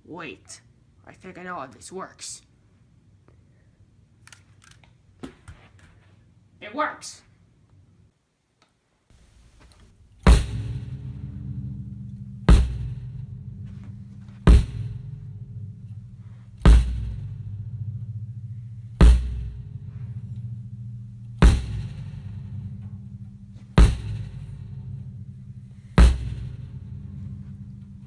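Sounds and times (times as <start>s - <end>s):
sustained low notes: 9.1s - 28.0s
heavy drum hits: 9.2s - 28.0s.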